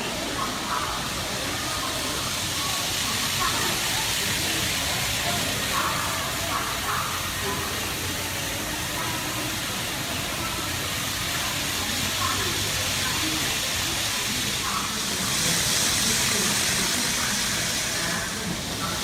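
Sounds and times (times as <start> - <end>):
faint murmur of voices: 0.0 - 19.0
model trains hissing on track: 0.0 - 19.0.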